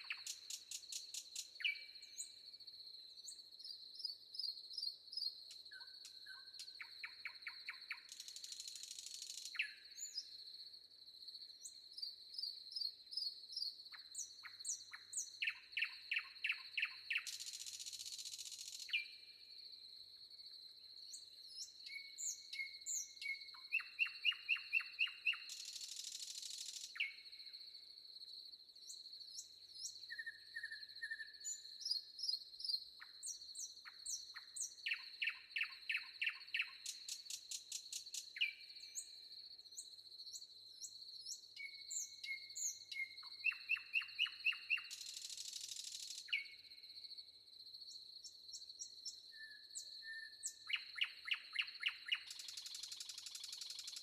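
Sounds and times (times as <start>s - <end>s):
birds singing and calling: 41.6s - 46.5s.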